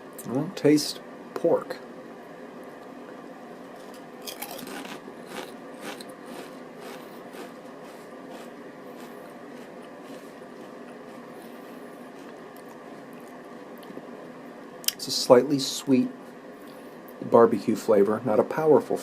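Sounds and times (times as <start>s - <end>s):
crunching potato chips: 4.2s - 13.4s.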